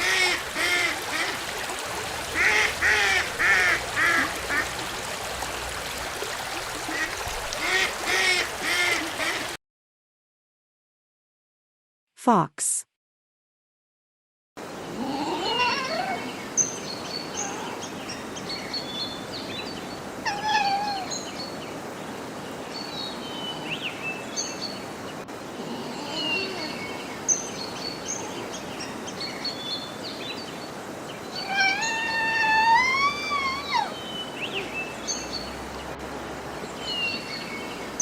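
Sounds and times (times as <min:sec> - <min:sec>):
fox calling: 0:31.4 - 0:34.0.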